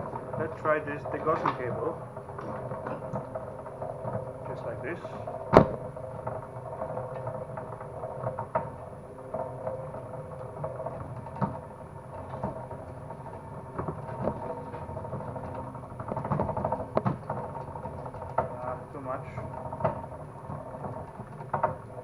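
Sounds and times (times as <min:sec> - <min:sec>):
cable clicks and knocks: 0:00.0 - 0:22.0
motor hum: 0:00.0 - 0:22.0.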